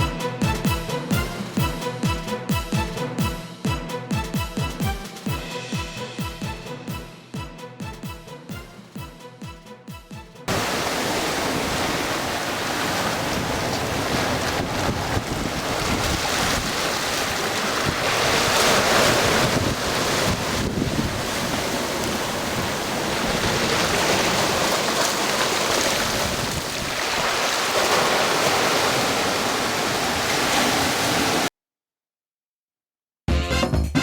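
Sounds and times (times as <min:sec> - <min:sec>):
sea surf: 0:10.5 - 0:31.5
wind buffeting microphone: 0:10.6 - 0:24.8, 0:25.6 - 0:27.5.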